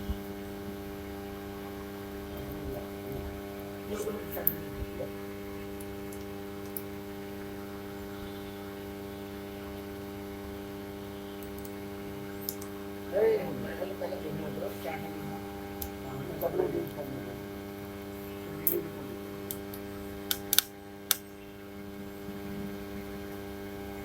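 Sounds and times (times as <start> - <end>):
electrical mains hum: 0.0 - 24.0
faint clicks: 11.4 - 11.8, 12.4 - 12.8.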